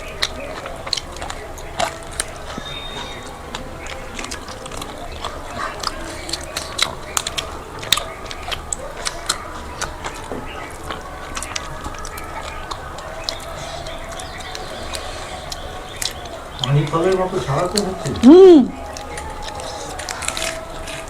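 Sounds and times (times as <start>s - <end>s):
chewing: 0.0s - 21.0s
prawn shells cracking: 18.8s - 21.0s.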